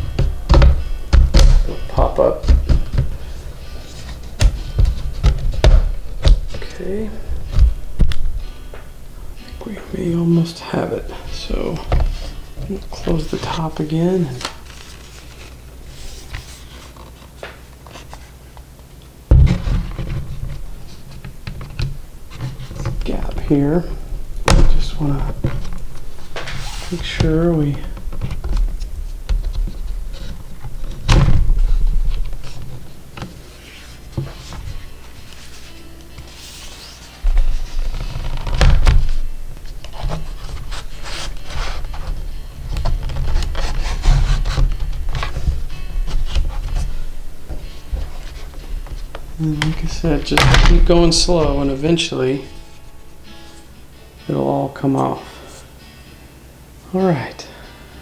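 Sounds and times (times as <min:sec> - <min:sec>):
dull thump: 0:00.0 - 0:03.2, 0:19.3 - 0:20.2, 0:49.1 - 0:51.9
low rumbling handling noise: 0:00.0 - 0:15.8, 0:19.3 - 0:53.3.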